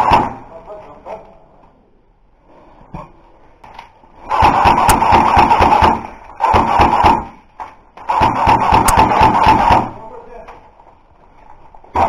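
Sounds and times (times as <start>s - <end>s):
airsoft gun firing bursts: 0.0s - 0.5s, 4.3s - 7.4s, 8.0s - 10.1s.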